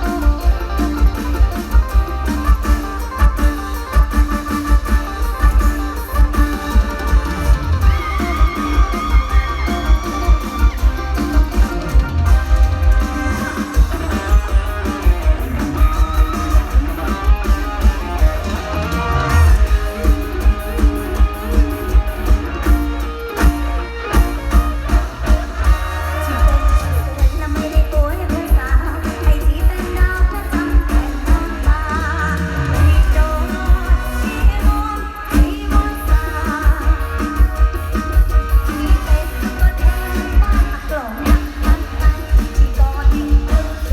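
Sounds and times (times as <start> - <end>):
bass drum and bass beat: 0.0 - 43.9
electric guitar lines: 0.0 - 43.9
live band music through pa: 0.0 - 43.9
person singing: 24.1 - 43.9.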